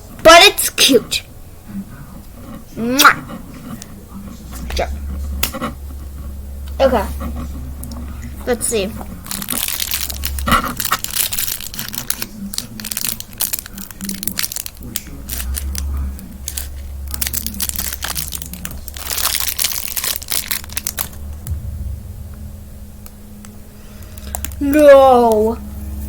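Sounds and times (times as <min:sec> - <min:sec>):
plastic packaging crinkling and tearing: 0:09.0 - 0:21.4, 0:24.1 - 0:24.7.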